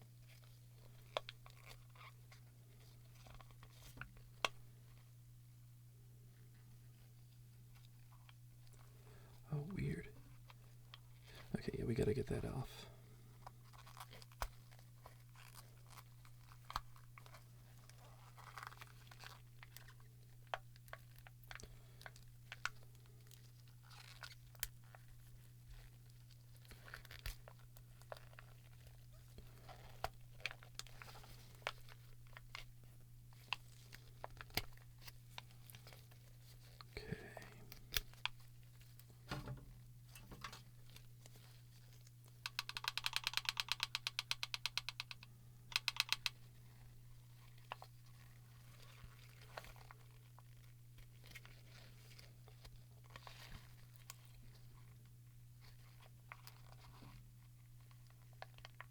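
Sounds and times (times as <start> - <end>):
plastic clicks and cracks: 42.3 - 46.5.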